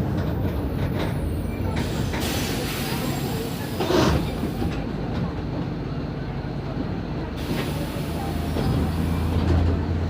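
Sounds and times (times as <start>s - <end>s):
bus diesel engine drone: 0.0s - 10.0s.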